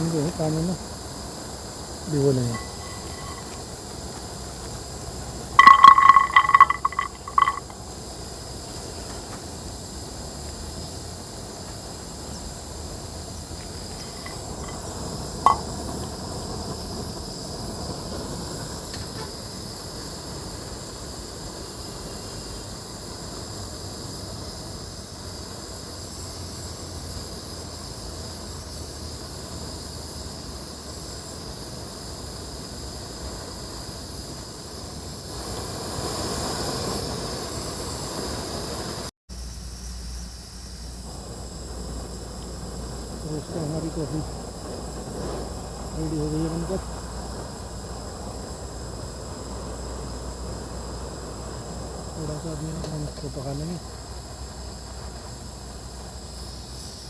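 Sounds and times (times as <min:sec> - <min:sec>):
gas stove hissing: 0:00.0 - 0:05.6, 0:07.2 - 0:57.0
metallic clink: 0:02.5 - 0:03.5, 0:05.6 - 0:07.7, 0:13.9 - 0:14.9, 0:15.5 - 0:15.7.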